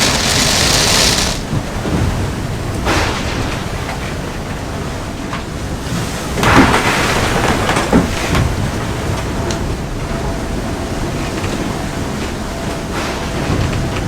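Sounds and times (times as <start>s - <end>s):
waves rushing and breaking: 0.0s - 4.3s.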